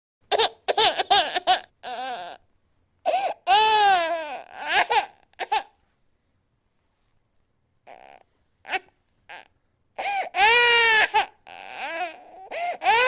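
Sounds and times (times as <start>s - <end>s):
infant crying: 0.3s - 2.4s, 3.1s - 5.7s, 7.9s - 13.0s.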